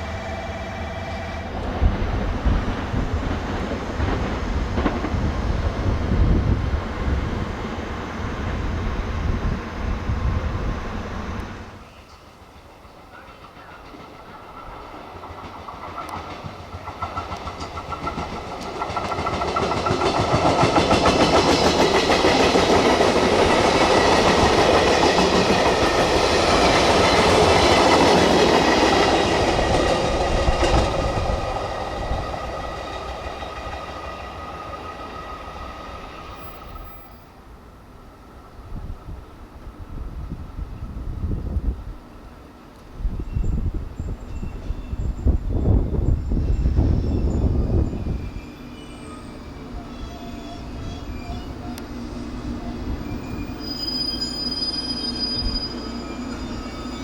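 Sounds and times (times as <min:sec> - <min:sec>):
passenger train passing: 0:00.0 - 0:57.0
train wheels clattering over rail joints: 0:12.1 - 0:31.6.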